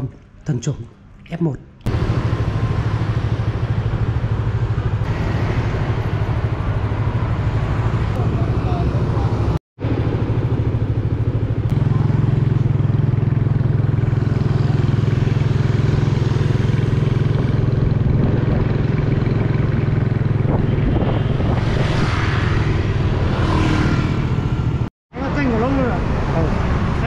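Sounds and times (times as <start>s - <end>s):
motorbike engine running: 1.9s - 22.0s.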